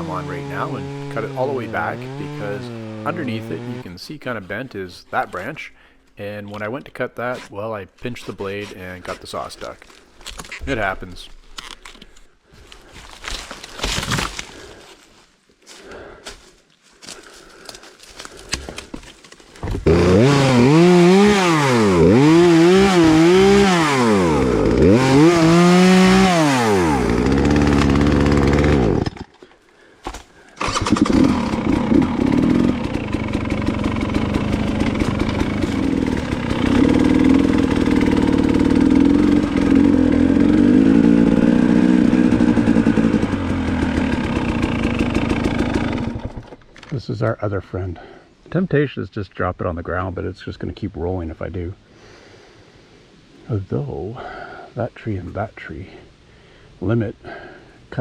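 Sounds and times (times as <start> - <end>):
dirt bike engine revving: 0.0 - 4.2, 19.8 - 29.2, 30.6 - 46.6.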